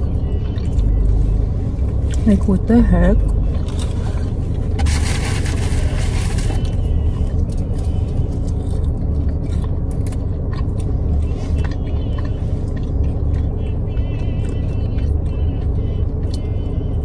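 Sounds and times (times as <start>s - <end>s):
scraping rustle: 4.0s - 6.8s.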